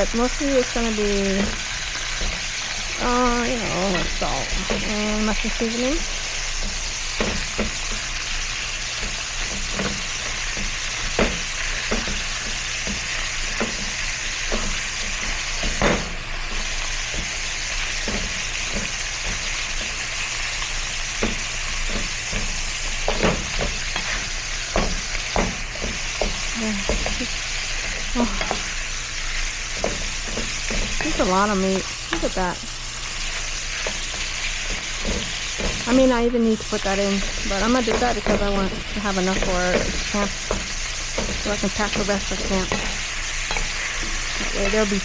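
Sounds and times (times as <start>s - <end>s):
utensil scraping a pan: 0.0s - 32.4s, 33.1s - 45.0s
meat sizzling in a pan: 0.0s - 45.0s.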